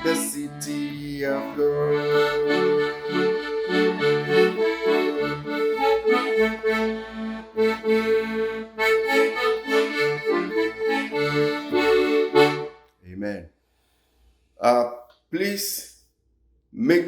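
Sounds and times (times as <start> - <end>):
instrumental gospel backing music: 0.0 - 12.8.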